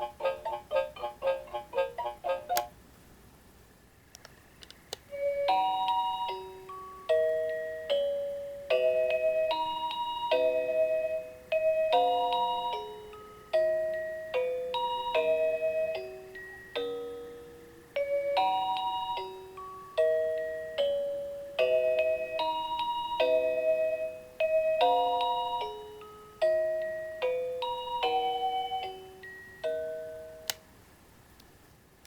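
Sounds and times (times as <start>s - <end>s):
faint clicks: 4.1s - 5.0s.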